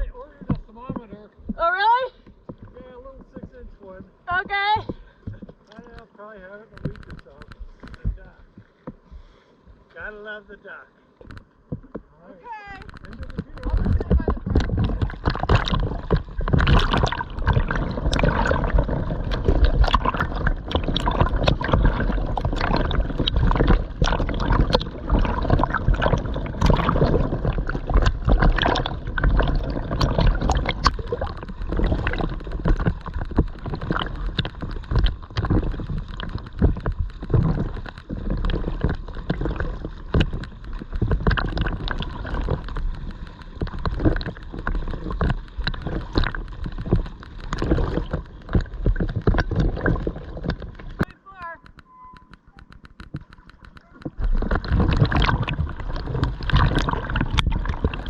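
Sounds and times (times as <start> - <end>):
water splashing and gurgling: 0.0 - 58.0.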